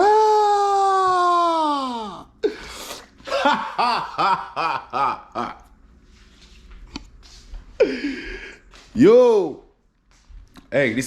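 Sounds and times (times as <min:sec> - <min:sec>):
man laughing: 0:03.2 - 0:05.8, 0:07.8 - 0:08.6.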